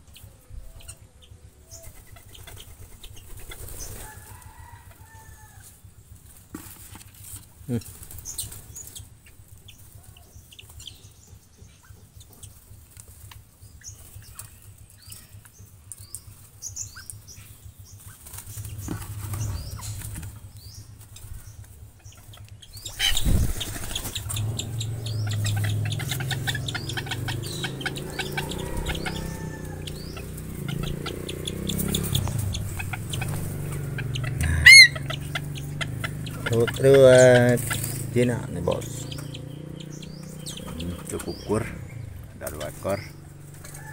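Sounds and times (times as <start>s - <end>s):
bird chirps: 0.0s - 4.2s, 7.0s - 12.7s, 13.5s - 43.9s
birds flapping and fluttering: 1.7s - 43.9s
loud high bird call: 22.8s - 42.1s.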